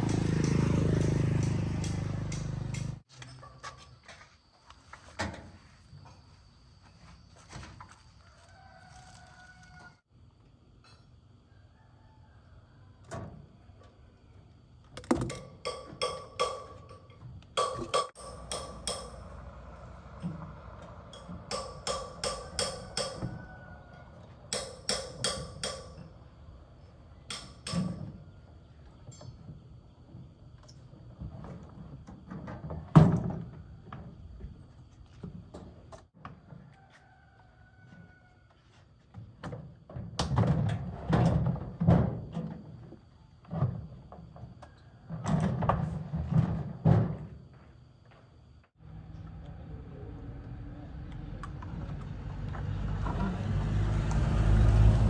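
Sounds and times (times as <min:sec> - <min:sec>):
hammer striking metal: 0:15.0 - 0:19.6, 0:21.1 - 0:23.3, 0:24.5 - 0:26.1, 0:27.3 - 0:28.0.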